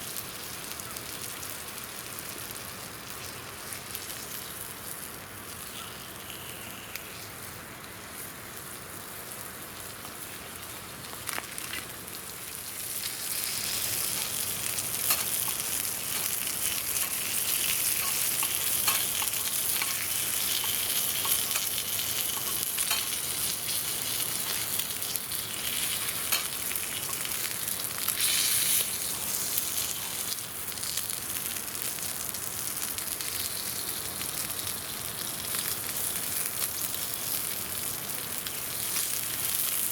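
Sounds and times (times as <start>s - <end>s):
meat sizzling on a grill: 0.0s - 39.9s
fire pops and crackles: 8.6s - 39.9s.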